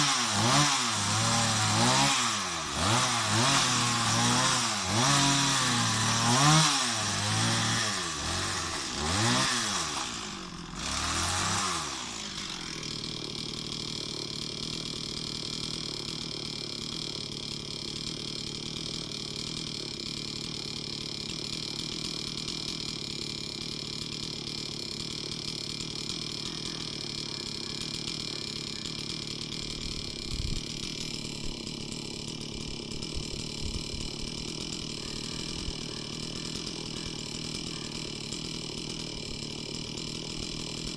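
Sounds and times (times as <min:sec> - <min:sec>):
chainsaw engine revving and idling: 0:00.0 - 0:40.9.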